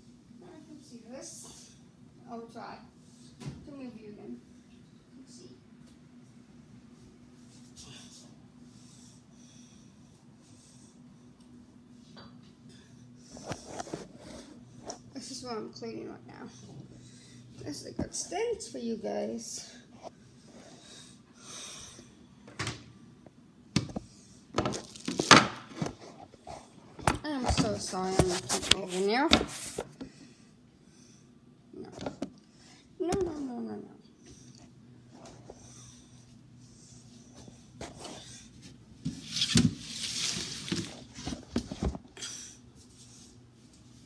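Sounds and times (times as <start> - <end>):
refrigerator hum: 0.0 - 44.0
loud scraping rustle: 39.2 - 41.1.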